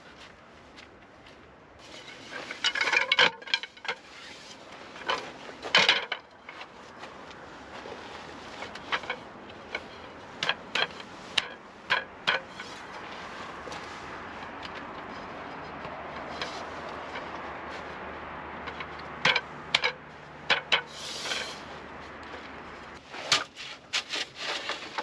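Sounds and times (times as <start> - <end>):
steady background noise: 0.0 - 25.0
rustling: 1.8 - 25.0
short knocks and clatters: 4.8 - 7.1.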